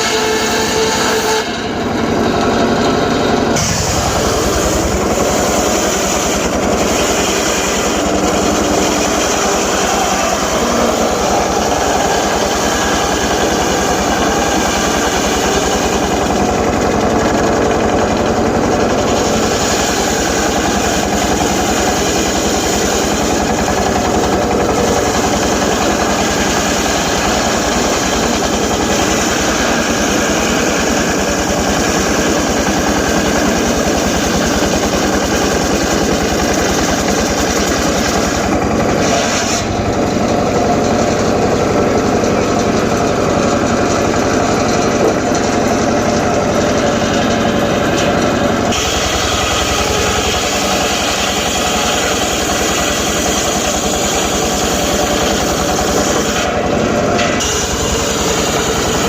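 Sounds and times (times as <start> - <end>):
circular saw cutting wood: 0.0 - 59.0.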